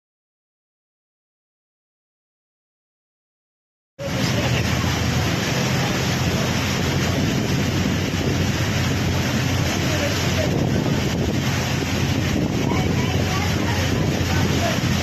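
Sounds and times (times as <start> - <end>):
strong wind buffeting microphone: 4.0 - 15.0.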